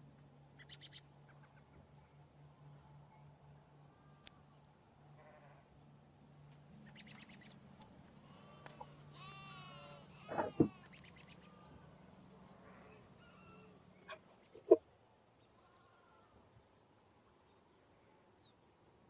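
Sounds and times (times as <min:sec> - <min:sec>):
sheep bleating: 0:05.2 - 0:05.6, 0:08.2 - 0:11.9.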